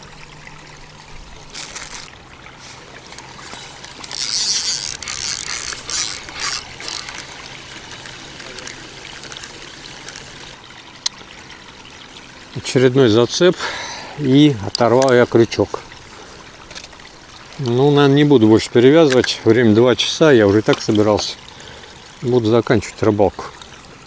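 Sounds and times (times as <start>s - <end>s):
river water running: 0.0s - 24.0s
loud hissing rustle: 1.3s - 10.6s.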